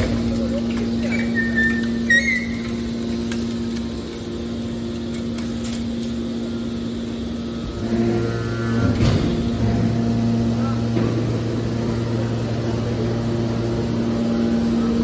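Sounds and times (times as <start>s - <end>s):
hydraulic power unit humming: 0.0s - 15.0s
high metallic squeal: 1.0s - 3.1s
deeper hum: 6.3s - 15.0s.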